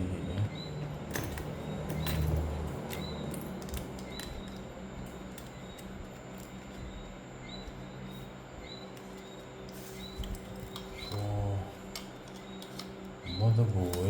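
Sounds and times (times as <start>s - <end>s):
faint high chirp: 5.5s - 11.4s.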